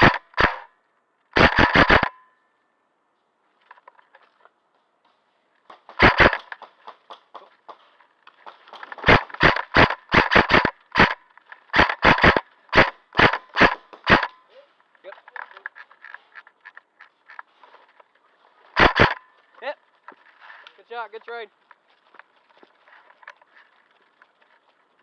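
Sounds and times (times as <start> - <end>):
airsoft gun shots: 0.0 - 0.7, 1.4 - 2.2, 5.9 - 6.6, 8.9 - 14.4, 18.8 - 19.2.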